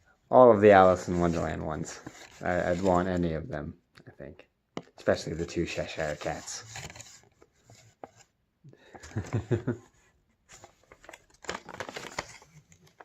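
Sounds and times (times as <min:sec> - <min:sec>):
packaging rustling and crinkling: 0:10.5 - 0:13.0.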